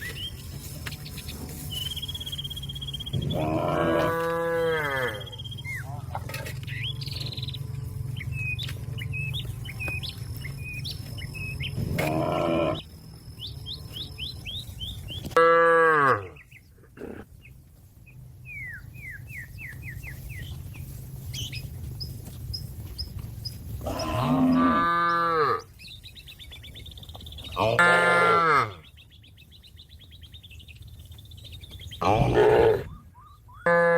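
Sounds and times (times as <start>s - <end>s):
small birds chirping: 0.0s - 15.4s, 16.2s - 33.7s
cow mooing: 3.2s - 5.4s, 11.8s - 12.8s, 15.4s - 16.4s, 23.8s - 25.7s, 27.6s - 28.8s, 32.0s - 33.0s, 33.6s - 33.9s.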